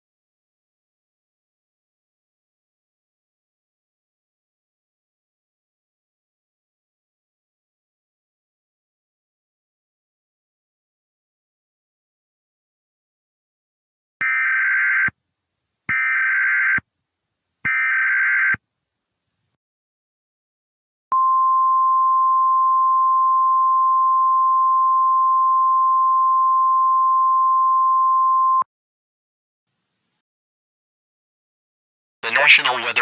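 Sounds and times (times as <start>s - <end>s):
steady high alert tone: 32.2s - 33.0s.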